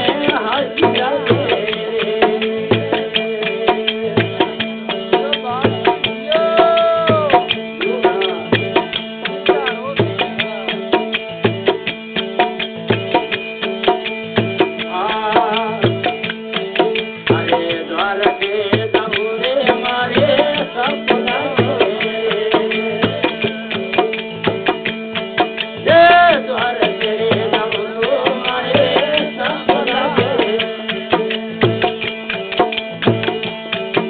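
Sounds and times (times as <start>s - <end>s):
hand drum beat: 0.0s - 34.0s
bending melody line: 1.0s - 12.4s.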